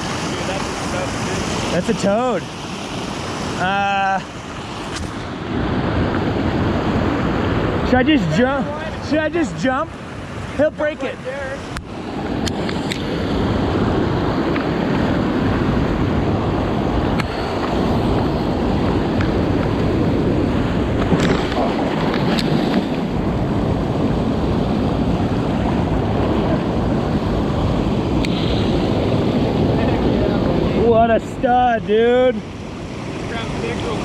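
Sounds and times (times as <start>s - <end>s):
stream and waterfall rushing: 0.0s - 34.0s.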